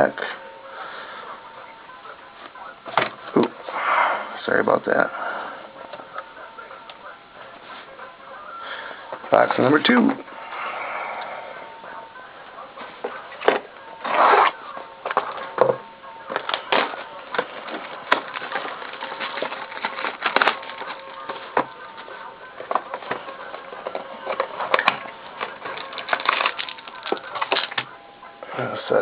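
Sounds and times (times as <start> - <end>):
plastic wrapper crinkling: 16.3 - 27.9.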